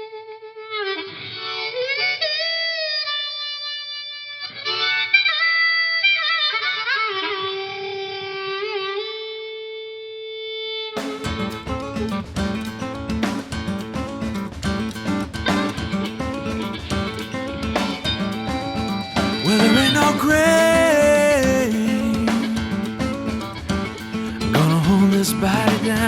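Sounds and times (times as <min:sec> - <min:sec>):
strummed acoustic guitar: 0:11.0 - 0:26.0.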